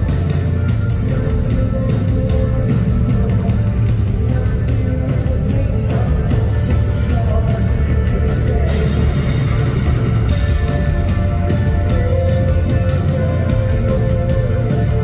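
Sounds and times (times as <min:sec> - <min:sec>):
rock band playing live: 0:00.0 - 0:15.0.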